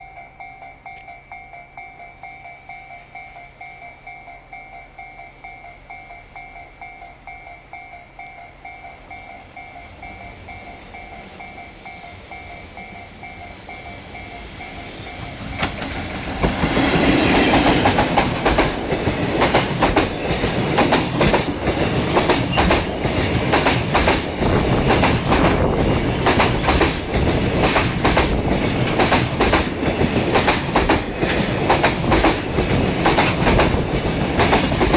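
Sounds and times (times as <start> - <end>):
level-crossing bell ringing: 0.0 - 16.0
freight train passing: 0.0 - 34.9.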